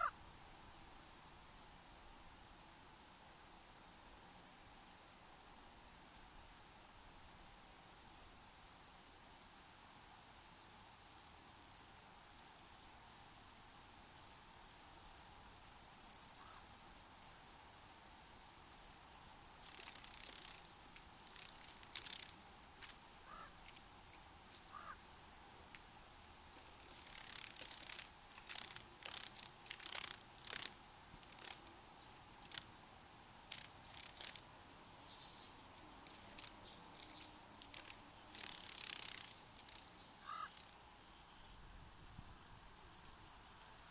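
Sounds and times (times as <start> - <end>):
soft steady hiss: 0.0 - 43.9
cricket chirping: 9.2 - 32.7, 33.5 - 43.9
sharp high rasping bursts: 26.6 - 31.7, 33.5 - 34.4, 36.0 - 40.8.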